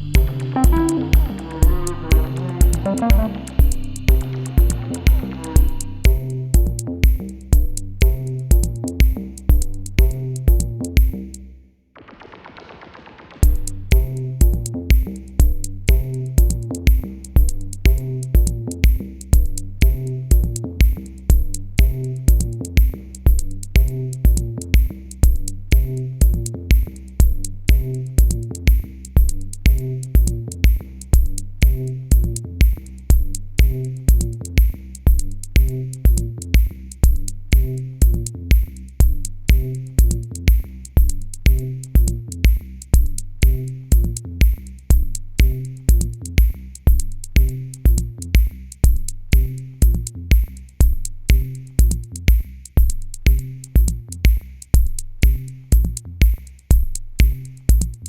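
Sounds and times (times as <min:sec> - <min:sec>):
electronic background music: 0:00.0 - 0:05.7
low kick drum: 0:00.0 - 0:11.4, 0:13.4 - 0:58.0.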